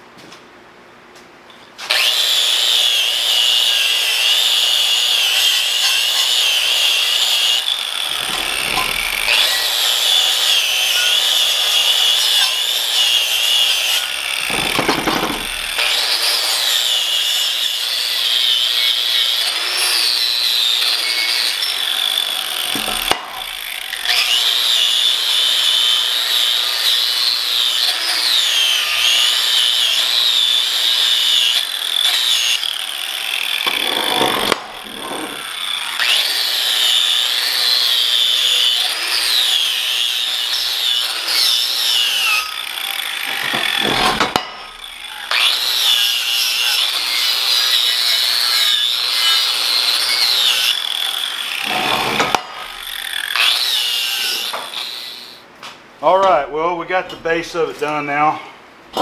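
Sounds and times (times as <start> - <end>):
welding arc crackling: 14.2 - 15.8.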